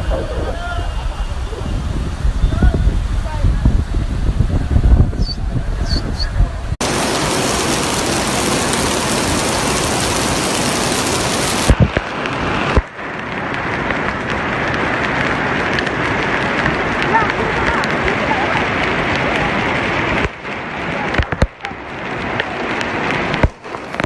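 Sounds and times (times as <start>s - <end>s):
rumble: 0.0s - 24.0s
flood water rushing: 6.5s - 24.0s.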